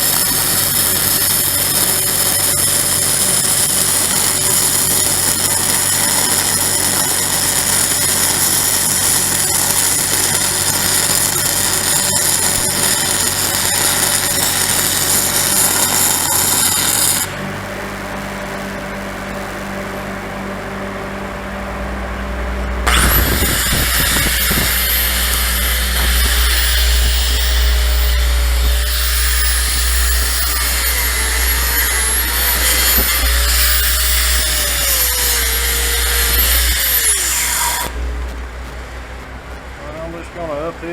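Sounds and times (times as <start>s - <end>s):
angle grinder whine: 0.0s - 39.8s
low steady hum: 17.3s - 40.9s.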